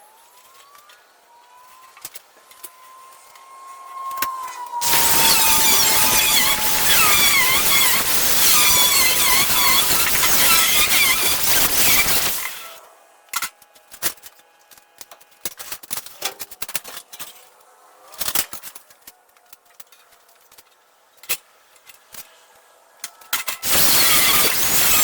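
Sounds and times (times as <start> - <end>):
loud steady hissing: 4.8 - 12.8, 23.6 - 25.0.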